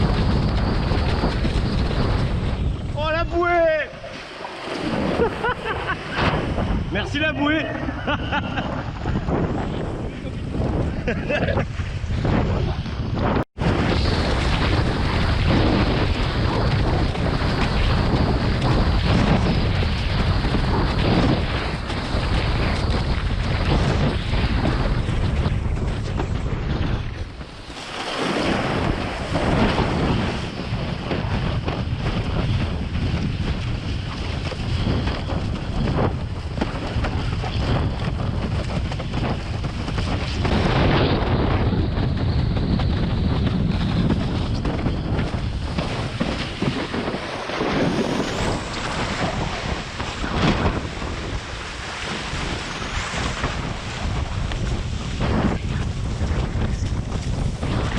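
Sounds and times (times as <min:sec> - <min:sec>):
wind buffeting microphone: 0:00.0 - 0:57.9
water rushing: 0:02.8 - 0:07.9, 0:45.6 - 0:54.2.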